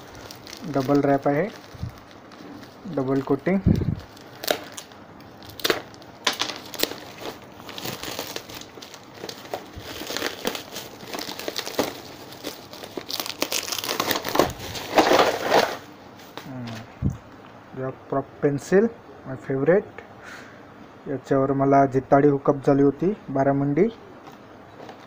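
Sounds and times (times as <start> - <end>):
bubble wrap crinkling: 0.0 - 16.8, 24.2 - 25.0.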